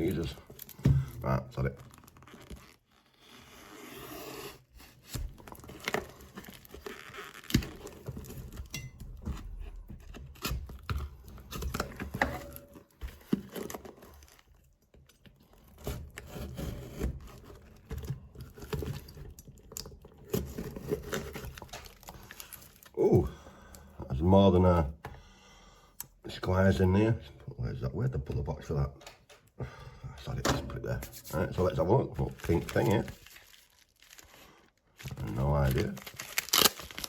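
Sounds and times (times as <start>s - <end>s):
packaging tearing and crinkling: 1.8s - 3.0s, 5.0s - 8.7s, 10.0s - 14.7s, 18.4s - 23.0s, 32.2s - 37.0s.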